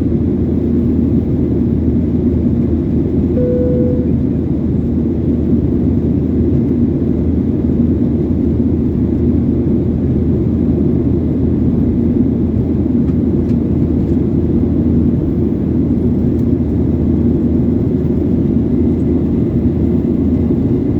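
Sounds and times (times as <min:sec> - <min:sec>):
faint steady hum: 0:03.4 - 0:04.5.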